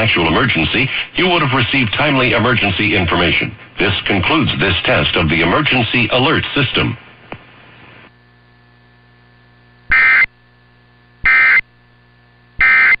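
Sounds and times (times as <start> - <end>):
faint steady hum: 0.0 - 13.0
screeching digital data tones: 9.9 - 10.3, 11.3 - 11.6, 12.6 - 13.0.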